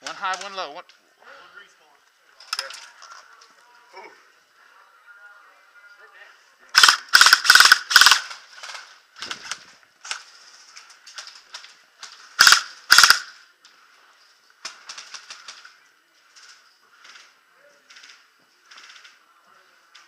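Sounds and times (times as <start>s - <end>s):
airsoft guns firing bursts: 6.8s - 8.8s, 12.4s - 13.4s.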